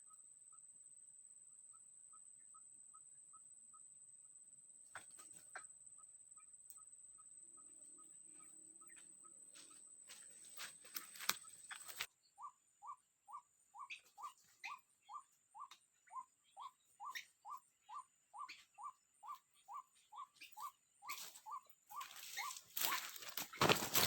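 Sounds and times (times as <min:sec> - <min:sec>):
waterhen calling: 0:16.6 - 0:23.7.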